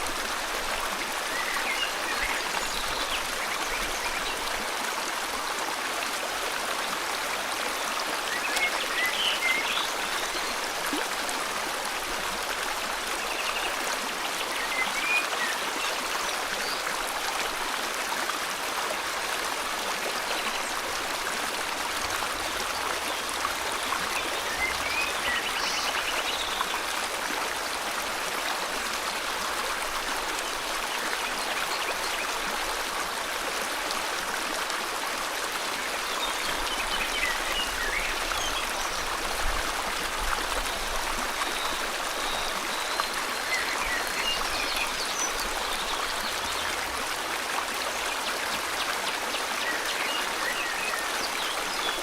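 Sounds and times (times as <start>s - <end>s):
flowing river water: 0.0s - 52.0s.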